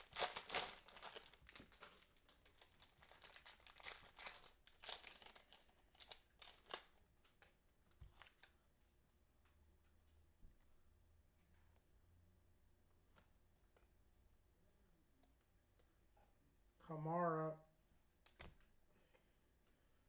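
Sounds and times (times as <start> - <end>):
cellophane wrappers crinkling and tearing: 0.0 - 8.5.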